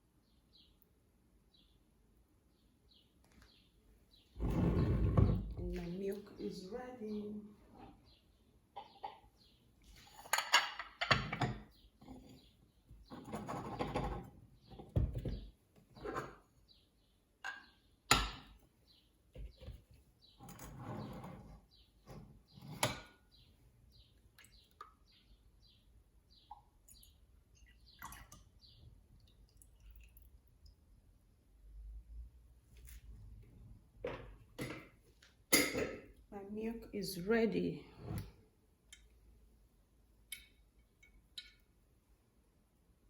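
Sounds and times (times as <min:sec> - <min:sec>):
kitchenware knocking and clinking: 0:10.2 - 0:12.3, 0:13.1 - 0:16.4, 0:17.5 - 0:18.6, 0:35.5 - 0:36.1.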